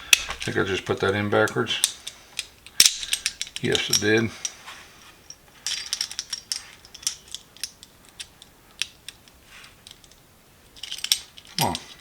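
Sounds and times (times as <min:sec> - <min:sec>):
metal sockets clicking and scraping: 0:00.1 - 0:04.6, 0:05.3 - 0:10.2.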